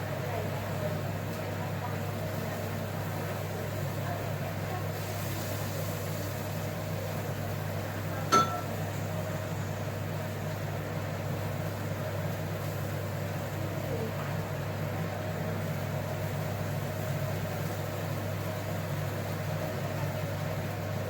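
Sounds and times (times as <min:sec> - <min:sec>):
appliance electrical hum: 0:00.0 - 0:21.0
sharp clink: 0:08.3 - 0:08.7.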